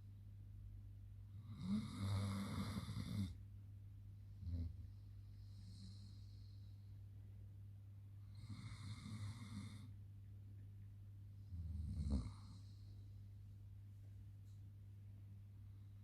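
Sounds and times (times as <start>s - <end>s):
dog snoring: 1.4s - 3.4s, 4.4s - 4.8s, 8.3s - 9.9s, 11.4s - 12.9s.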